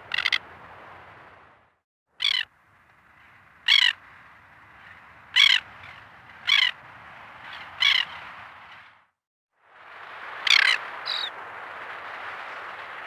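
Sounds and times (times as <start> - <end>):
bird harsh calls: 0.0 - 0.4, 2.2 - 2.5, 3.6 - 4.1, 4.8 - 6.8, 7.5 - 8.2, 10.5 - 11.3
forest ambience hiss: 2.2 - 8.9, 9.6 - 13.0.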